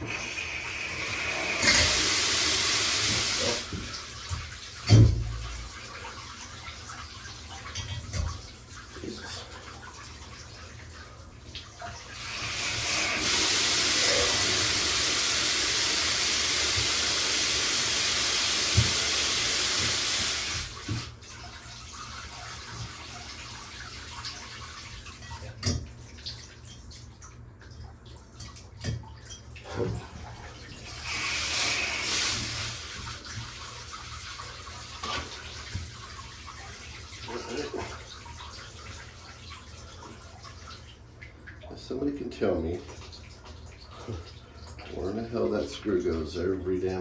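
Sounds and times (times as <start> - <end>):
water gushing from faucet: 0.0 - 47.0.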